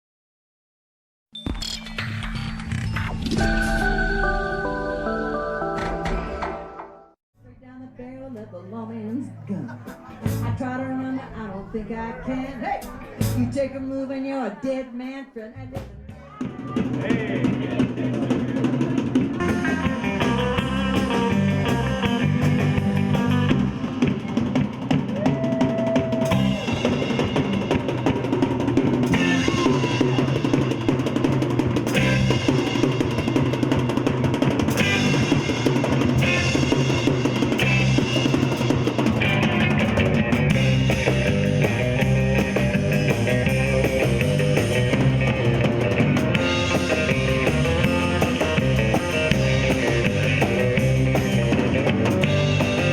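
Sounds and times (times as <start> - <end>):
live band playing: 9.2 - 13.8, 15.8 - 52.9
drum kit: 9.8 - 10.8, 12.3 - 14.0, 15.6 - 52.9.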